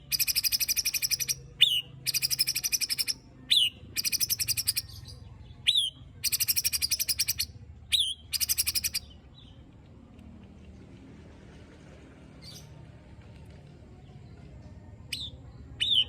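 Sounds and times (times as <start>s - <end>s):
bird calling with harsh rattle: 0.1s - 4.8s, 5.7s - 9.0s.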